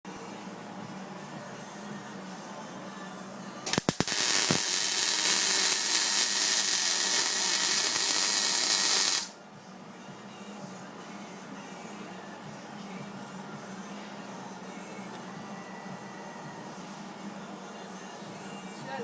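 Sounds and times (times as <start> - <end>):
welding arc crackling hiss: 3.7 - 9.3.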